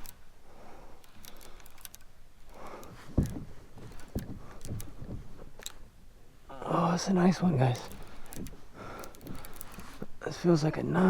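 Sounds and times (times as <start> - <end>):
fishing reel clicking: 0.0 - 0.2, 1.0 - 2.9.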